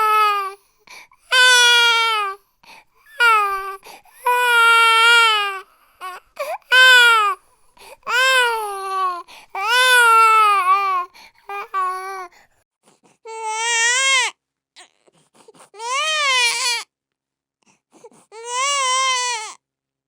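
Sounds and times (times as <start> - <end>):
baby crying: 0.0 - 0.6, 1.3 - 2.4, 3.1 - 12.3, 13.3 - 15.1, 15.8 - 16.8, 18.3 - 19.6
baby gasping breath: 0.6 - 1.2, 2.4 - 4.3, 6.4 - 6.7, 7.5 - 8.2, 9.1 - 9.6, 10.9 - 13.2, 15.1 - 15.8, 17.6 - 18.4.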